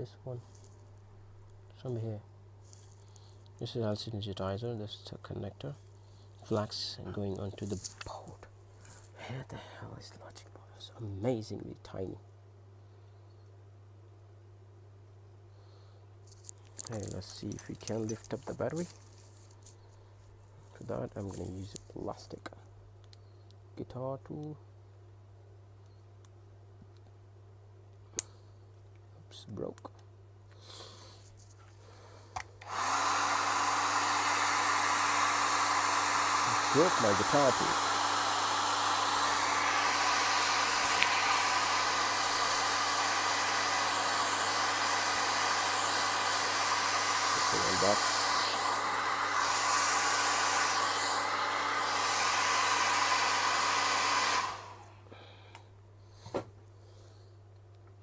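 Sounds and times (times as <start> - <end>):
hot-air blower rushing: 32.6 - 55.3.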